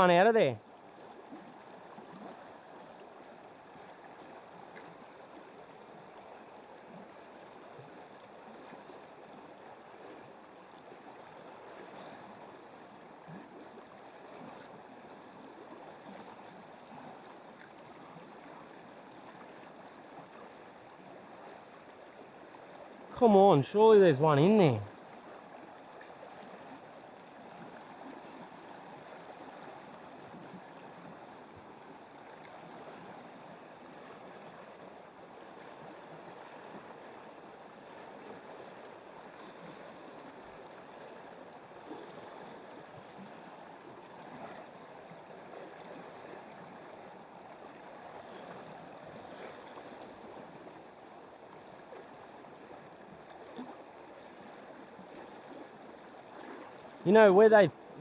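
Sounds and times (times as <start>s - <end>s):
river water rushing: 17.8s - 31.1s.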